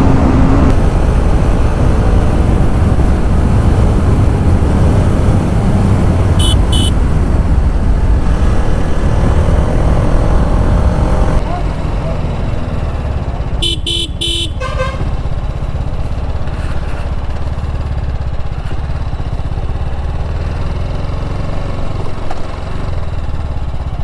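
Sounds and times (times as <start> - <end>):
motorcycle engine rumble: 0.0 - 24.0
vehicle horn beeps: 6.4 - 7.0, 13.6 - 15.2.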